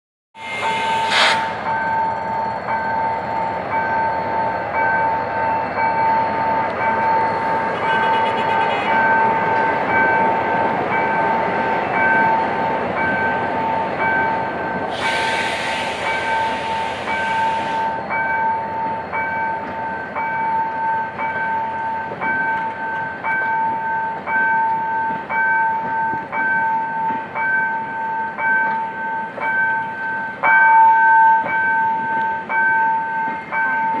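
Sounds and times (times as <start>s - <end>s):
diesel train rumble: 0.4s - 28.0s
loud hiss: 14.9s - 18.0s.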